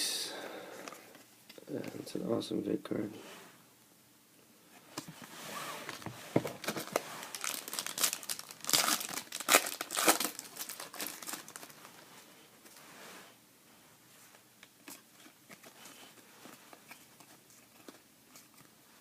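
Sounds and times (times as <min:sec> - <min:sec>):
wrapper tearing and crinkling: 0:06.6 - 0:12.0.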